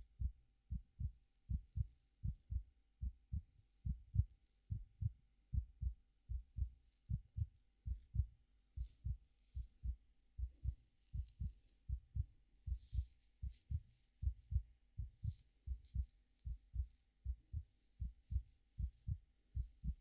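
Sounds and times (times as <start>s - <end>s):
heartbeat: 0.0s - 20.0s
fingers rustling through hair: 6.6s - 12.0s, 12.6s - 20.0s.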